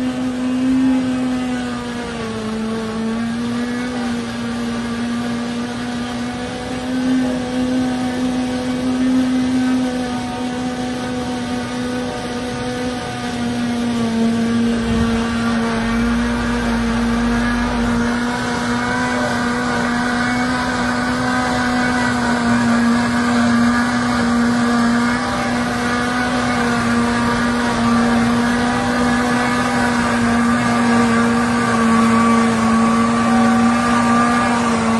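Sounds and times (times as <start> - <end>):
harvester droning hum: 0.0 - 34.9.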